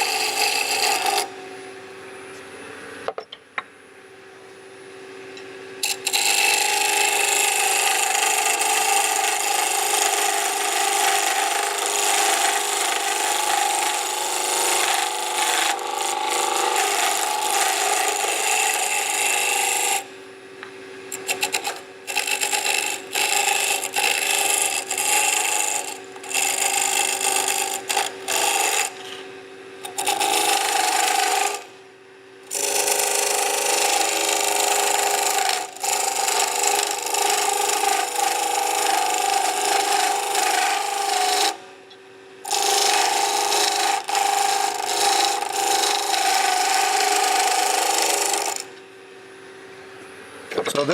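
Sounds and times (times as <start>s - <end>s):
chisel rasping on spinning wood: 0.0s - 1.3s, 5.8s - 20.1s, 21.1s - 29.0s, 29.8s - 31.7s, 32.5s - 41.6s, 42.4s - 48.7s
lathe humming: 0.0s - 1.5s, 5.8s - 20.1s, 21.1s - 29.0s, 29.8s - 31.8s, 32.5s - 41.6s, 42.4s - 48.8s.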